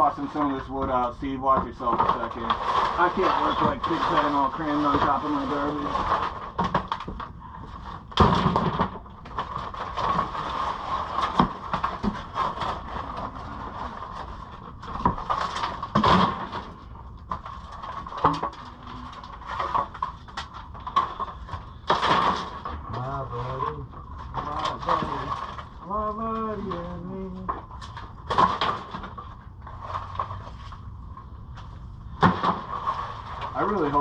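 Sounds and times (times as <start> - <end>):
boards being pried off: 0.0 - 25.9, 27.4 - 30.7, 32.1 - 34.0
steady background hum: 0.0 - 34.0.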